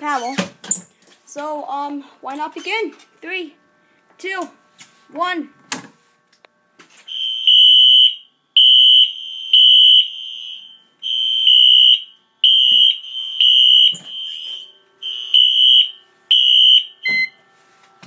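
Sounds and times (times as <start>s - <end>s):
fire alarm horn blasts: 7.1s - 17.5s.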